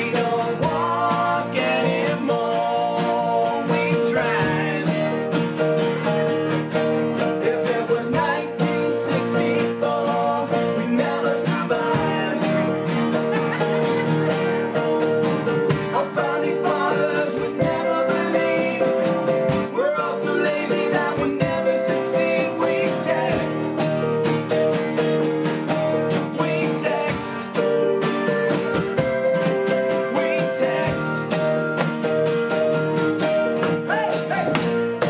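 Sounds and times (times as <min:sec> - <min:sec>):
strummed guitars: 0:00.0 - 0:35.0
steady drum beat: 0:16.7 - 0:19.8, 0:28.6 - 0:29.7.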